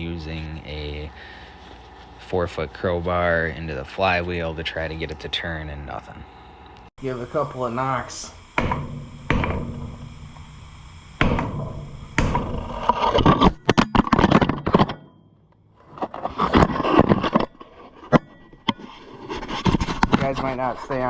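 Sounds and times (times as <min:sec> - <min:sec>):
metal scraping: 0:08.7 - 0:15.2, 0:15.8 - 0:21.0.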